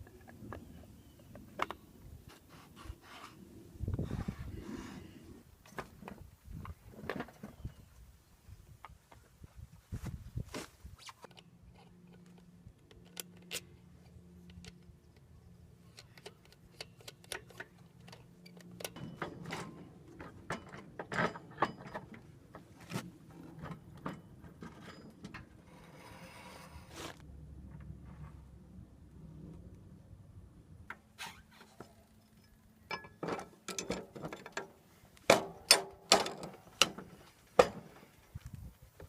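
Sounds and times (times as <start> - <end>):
clinks of tools and metal parts: 15.9 - 22.6, 23.6 - 25.7, 31.6 - 38.5.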